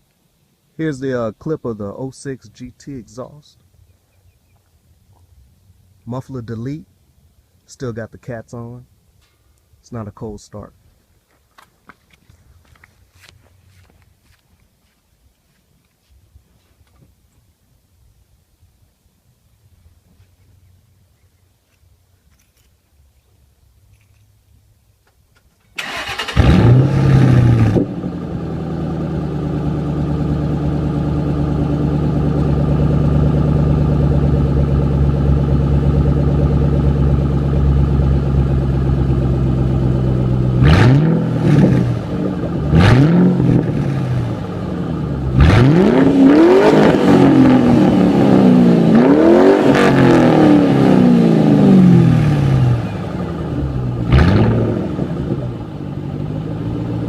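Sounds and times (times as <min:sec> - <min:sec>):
car engine starting: 0:25.6 - 0:57.0
car engine idling: 0:25.8 - 0:49.0, 0:50.0 - 0:57.0
engine revving: 0:25.8 - 0:57.0.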